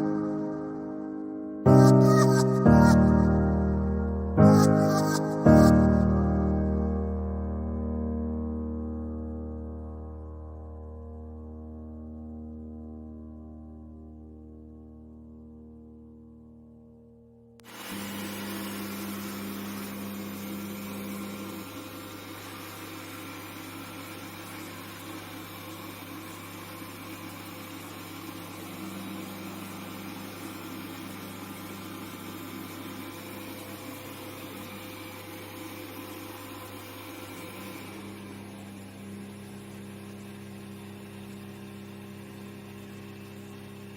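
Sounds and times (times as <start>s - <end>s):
suction fan hiss: 17.6s - 39.0s
robot vacuum motor hum: 17.6s - 40.0s.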